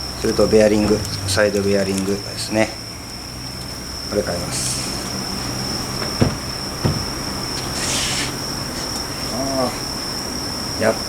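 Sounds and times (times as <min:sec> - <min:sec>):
light knocks: 0:06.0 - 0:07.7
short hiss: 0:07.6 - 0:09.0.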